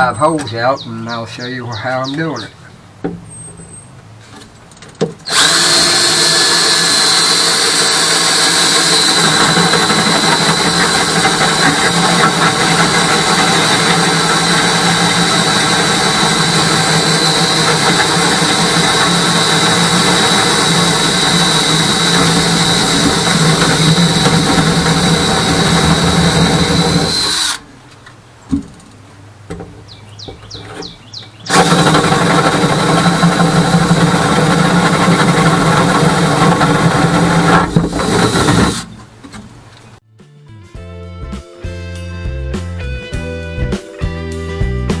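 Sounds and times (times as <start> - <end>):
power drill boring through wood: 5.3 - 27.6, 31.5 - 39.0.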